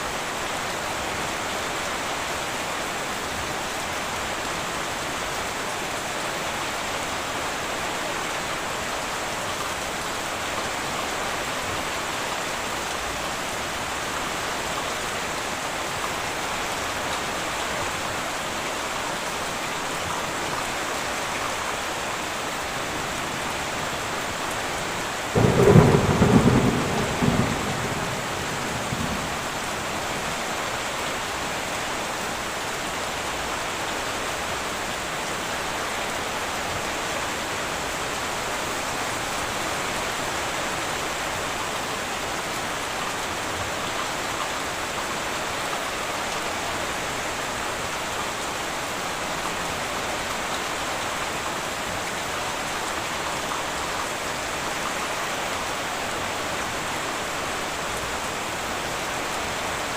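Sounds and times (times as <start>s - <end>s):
heavy rain on a metal roof: 0.0s - 59.9s
thunderclap rumbling: 25.4s - 29.6s.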